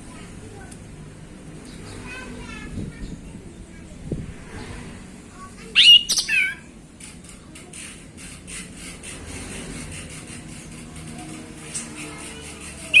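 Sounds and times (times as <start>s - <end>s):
thrush singing whistled notes: 5.8s - 6.6s.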